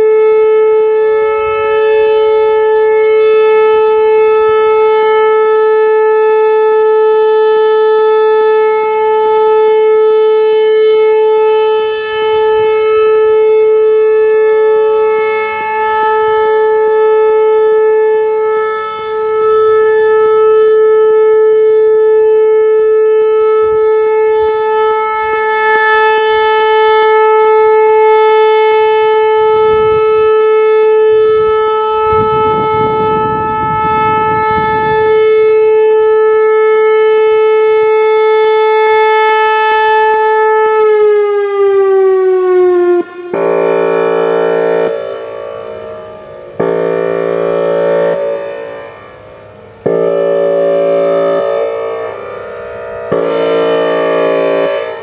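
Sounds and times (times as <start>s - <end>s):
electronic warning siren tone: 0.0s - 55.0s
siren airhorn blasts: 0.0s - 55.0s.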